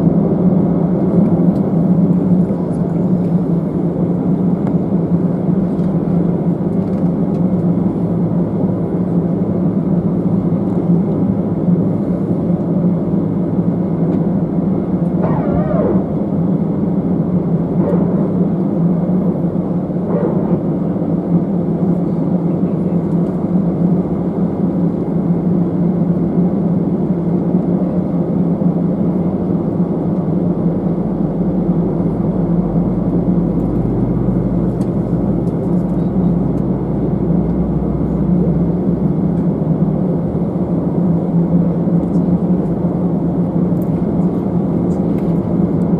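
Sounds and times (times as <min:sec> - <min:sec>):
airliner cabin engine drone: 0:00.0 - 0:45.9
deep hum: 0:14.1 - 0:22.2.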